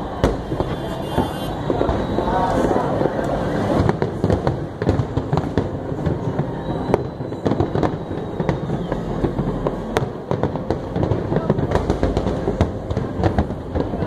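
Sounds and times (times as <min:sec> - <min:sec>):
continuous rumble: 0:00.0 - 0:14.0
fireworks bangs and crackles: 0:00.0 - 0:14.0
whistle of rising firework: 0:00.2 - 0:03.5, 0:06.2 - 0:10.5.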